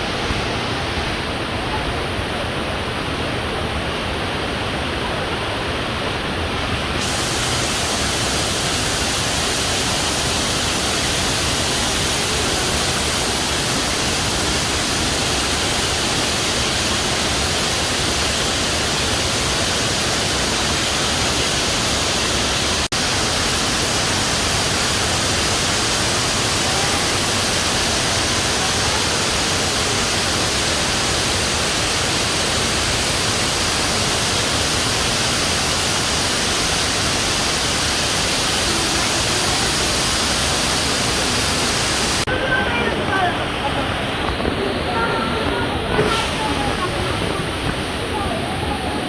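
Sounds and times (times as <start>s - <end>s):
waterfall rushing: 0.0s - 49.0s.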